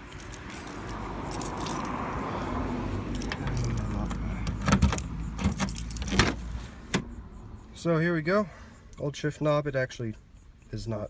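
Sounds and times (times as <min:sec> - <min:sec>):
keys jangling: 0:00.0 - 0:06.5.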